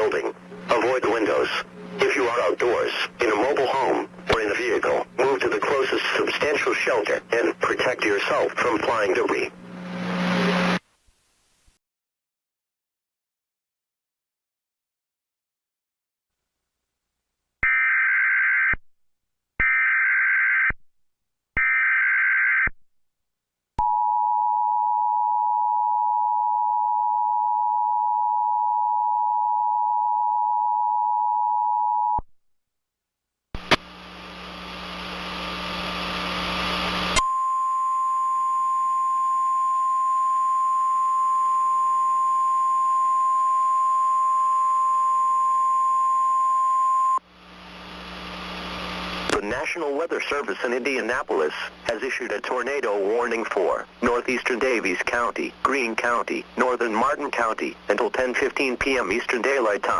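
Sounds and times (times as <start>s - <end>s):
radio static: 0.0s - 9.6s, 33.6s - 37.2s, 48.6s - 59.9s.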